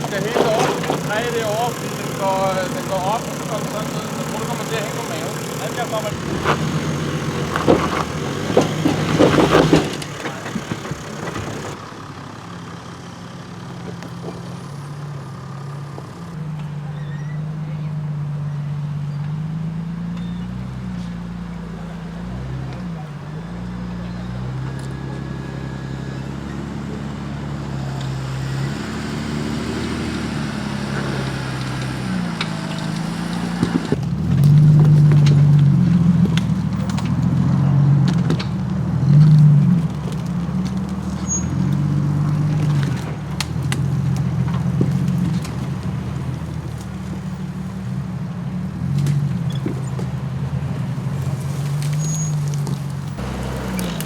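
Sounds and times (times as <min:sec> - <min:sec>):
scattered clicks and knocks: 0:00.0 - 0:11.8
off-road vehicle engine revving: 0:00.0 - 0:54.0.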